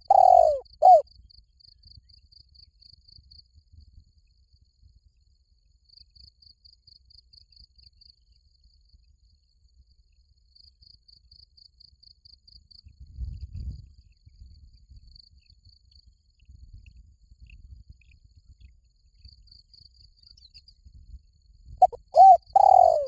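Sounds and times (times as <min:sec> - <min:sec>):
insects chirping: 0:00.0 - 0:01.0, 0:22.2 - 0:23.0.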